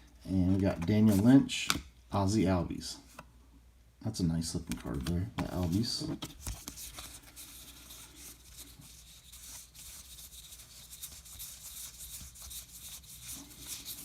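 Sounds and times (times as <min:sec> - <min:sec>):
cards sliding against cards: 0:04.7 - 0:14.0.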